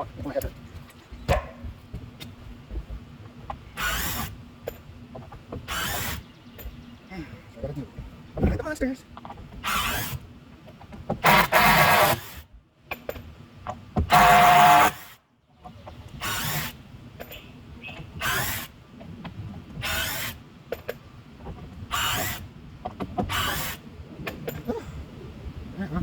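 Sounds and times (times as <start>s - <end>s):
power drill whirring: 5.7s - 6.2s, 9.6s - 10.2s, 11.2s - 12.4s, 14.1s - 15.2s, 16.2s - 16.8s, 18.2s - 18.8s, 19.8s - 20.4s, 21.9s - 22.4s, 23.3s - 23.8s.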